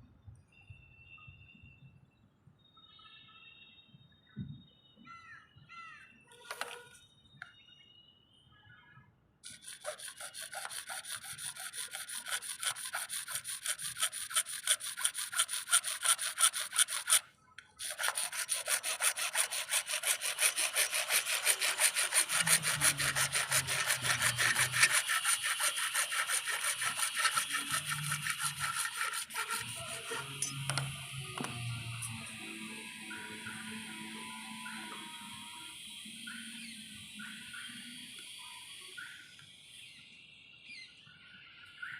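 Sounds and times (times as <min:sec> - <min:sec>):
light scrapes and clicks: 0:06.4 - 0:07.0
hacksaw cutting plastic pipe: 0:09.4 - 0:37.9.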